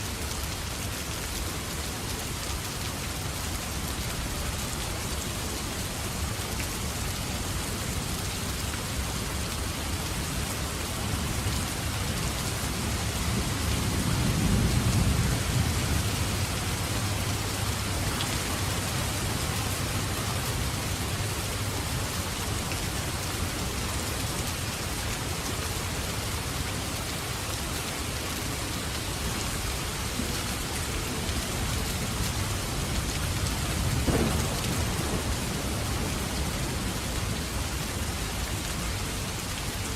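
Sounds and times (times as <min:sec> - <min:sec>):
heavy rain: 0:00.0 - 0:39.9
thunder rumbling: 0:33.6 - 0:37.2.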